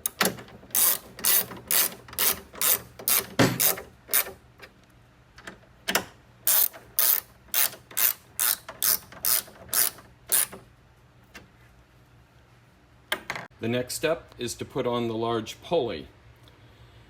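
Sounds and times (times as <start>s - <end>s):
ratchet wrench clicking: 0.0s - 4.4s, 6.5s - 10.6s.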